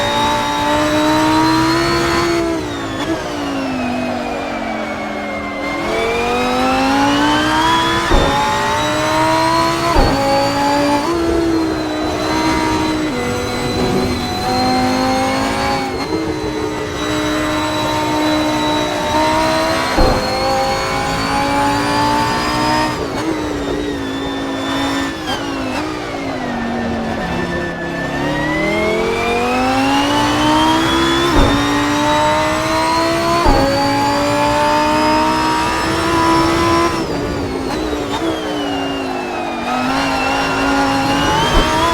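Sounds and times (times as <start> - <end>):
sports car engine revving: 0.0 - 41.9
exhaust pops at gear shifts: 5.6 - 24.3, 28.7 - 41.9.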